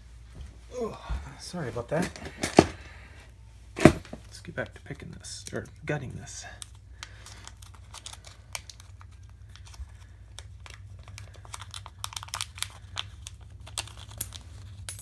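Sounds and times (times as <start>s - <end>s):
steady low hum: 0.0s - 7.4s
clicks and rustling of handling: 1.7s - 3.0s, 3.8s - 4.3s.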